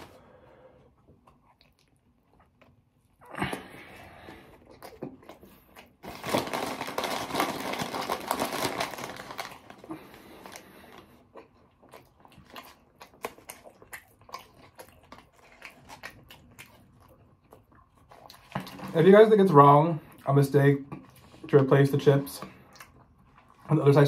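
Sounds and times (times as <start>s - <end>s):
crunchy food chewing: 1.2s - 19.0s.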